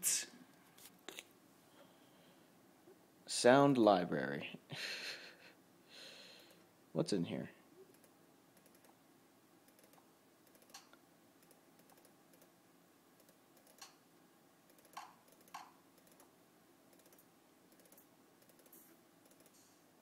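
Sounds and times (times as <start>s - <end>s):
computer keys clicking: 7.9s - 9.0s, 9.7s - 12.5s, 13.2s - 14.0s, 14.7s - 16.3s, 16.9s - 19.7s.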